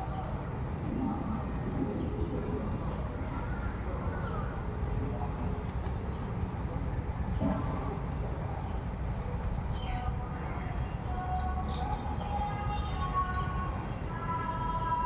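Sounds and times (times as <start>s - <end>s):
low rumble: 0.0s - 6.3s.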